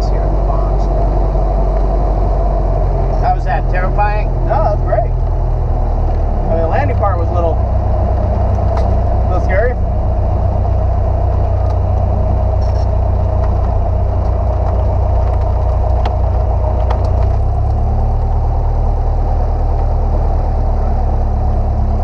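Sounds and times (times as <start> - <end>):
airplane engine and propeller droning: 0.0 - 22.0.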